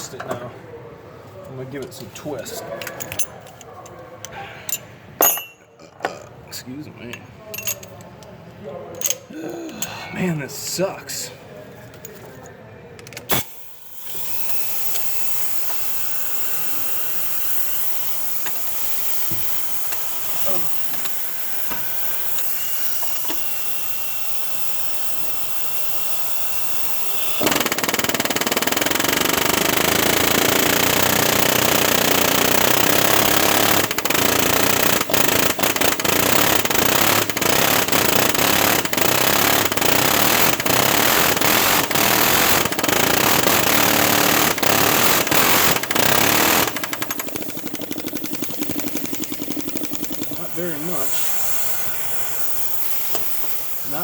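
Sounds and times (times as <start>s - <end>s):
mechanical running noise: 14.0s - 54.0s.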